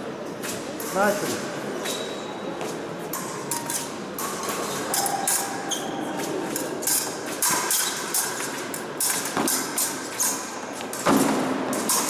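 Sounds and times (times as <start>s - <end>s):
shoes squeaking and tapping: 1.8s - 2.8s, 4.5s - 8.6s, 9.4s - 10.9s.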